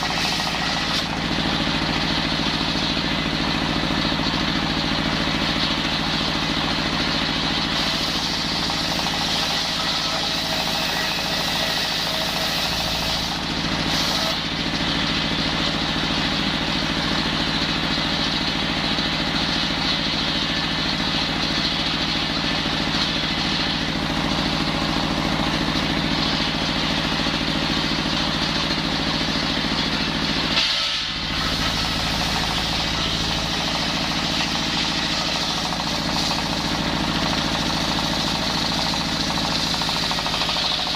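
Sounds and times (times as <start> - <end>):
circular saw cutting timber: 0.0 - 4.2, 5.8 - 15.7, 28.5 - 40.9.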